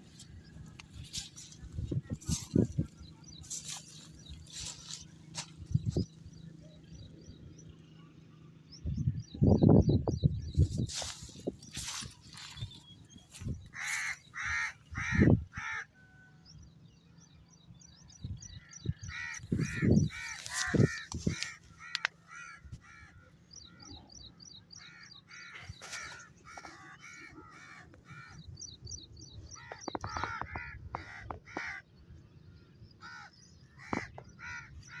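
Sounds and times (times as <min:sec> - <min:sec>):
small birds chirping: 0:00.0 - 0:15.8, 0:17.2 - 0:32.0
crows cawing: 0:13.3 - 0:16.0, 0:19.1 - 0:23.2, 0:24.8 - 0:28.4, 0:29.6 - 0:31.8, 0:33.0 - 0:35.0.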